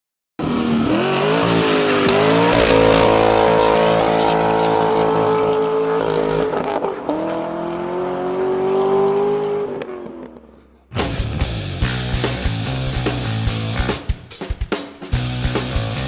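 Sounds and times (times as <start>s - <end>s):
engine revving: 0.4s - 10.6s.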